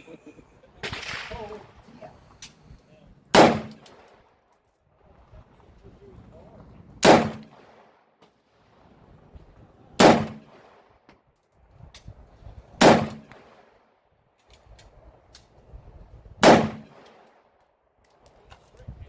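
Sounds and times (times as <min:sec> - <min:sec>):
loud gunshots with echo: 0:00.8 - 0:01.6, 0:03.3 - 0:04.1, 0:07.0 - 0:07.9, 0:10.0 - 0:10.8, 0:16.4 - 0:17.0.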